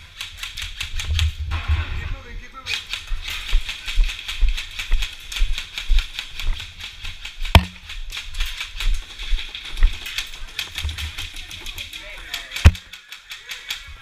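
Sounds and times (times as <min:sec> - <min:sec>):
sharp crack: 0:02.7 - 0:13.9
gear knocking and rattling: 0:02.7 - 0:14.0.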